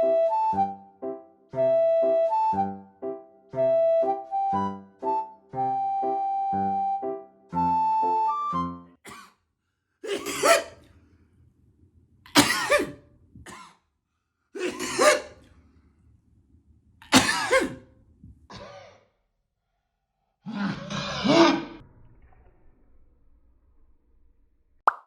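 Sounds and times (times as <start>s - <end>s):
man sneezing: 10.1s - 10.8s, 12.3s - 13.7s, 14.6s - 15.5s, 17.1s - 17.8s.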